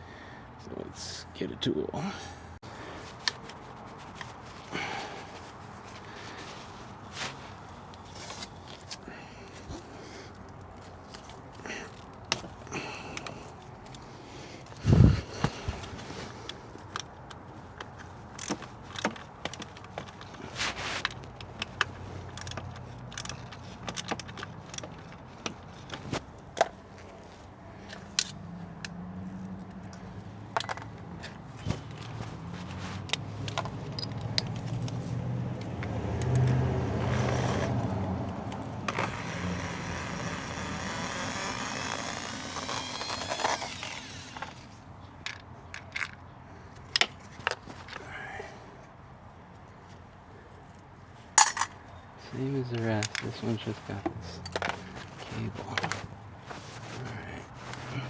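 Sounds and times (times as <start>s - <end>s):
metal tools clinking on plastic: 16.4s - 26.8s, 33.1s - 35.0s, 51.4s - 51.9s, 52.6s - 58.0s
passing vehicle engine hum: 28.3s - 44.7s.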